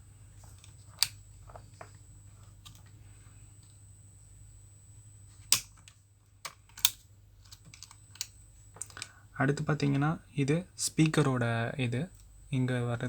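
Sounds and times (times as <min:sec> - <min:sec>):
steady low hum: 0:00.0 - 0:13.0
plastic parts clicking: 0:05.5 - 0:09.1.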